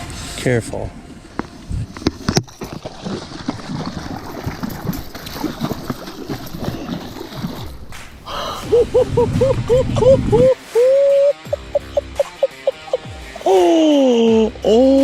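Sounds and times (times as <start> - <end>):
water splashing and sloshing: 1.7 - 10.8.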